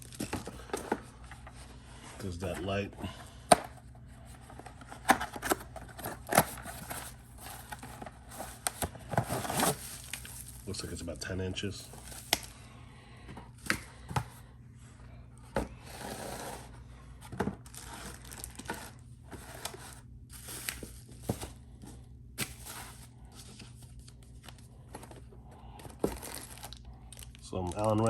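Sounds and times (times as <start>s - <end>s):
plastic wrapping rustling and tearing: 0.0s - 1.6s, 4.4s - 12.6s, 17.6s - 21.5s, 25.8s - 28.0s.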